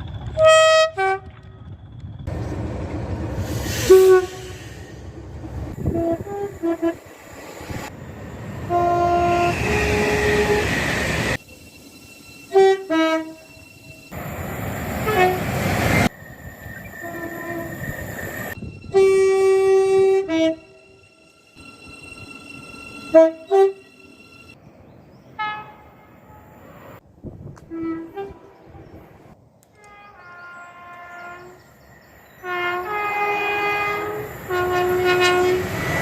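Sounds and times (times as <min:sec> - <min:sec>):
trains passing rumble: 0:00.0 - 0:27.2, 0:28.1 - 0:36.0
train horns sounding: 0:00.3 - 0:01.5, 0:03.8 - 0:05.1, 0:05.7 - 0:07.1, 0:08.6 - 0:10.8, 0:12.4 - 0:14.1, 0:15.0 - 0:15.7, 0:16.9 - 0:17.9, 0:18.8 - 0:21.2, 0:23.0 - 0:24.1, 0:25.4 - 0:26.6, 0:27.6 - 0:28.9, 0:29.7 - 0:31.6, 0:32.4 - 0:36.0.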